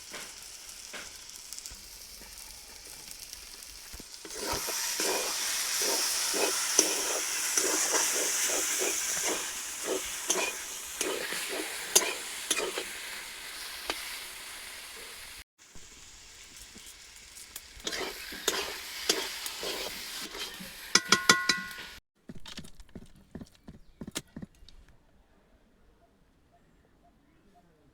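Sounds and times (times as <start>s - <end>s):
food sizzling in a pan: 0.0s - 22.0s
stirring strokes: 4.2s - 13.0s, 16.4s - 21.8s
ringing metallic clinks: 21.0s - 21.8s.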